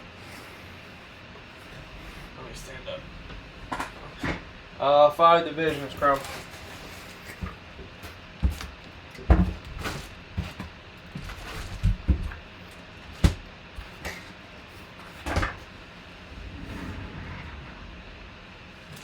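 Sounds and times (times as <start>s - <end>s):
box knocks and thumps: 8.4s - 12.4s.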